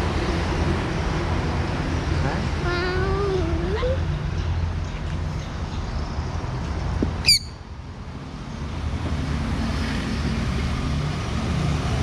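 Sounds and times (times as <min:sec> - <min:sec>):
road traffic rumble: 0:00.0 - 0:12.0
parrot squawk: 0:07.2 - 0:07.6.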